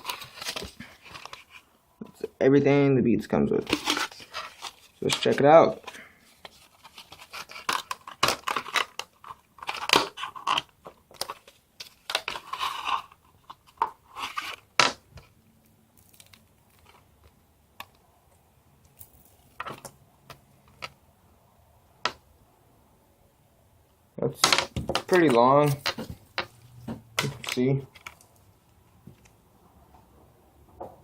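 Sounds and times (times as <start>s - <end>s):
plastic packaging crinkling: 3.6s - 14.6s, 16.0s - 17.1s, 24.8s - 28.5s.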